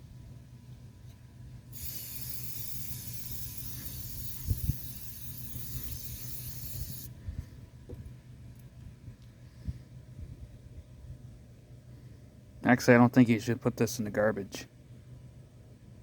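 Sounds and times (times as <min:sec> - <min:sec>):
air duster spraying hiss: 0:01.8 - 0:07.1.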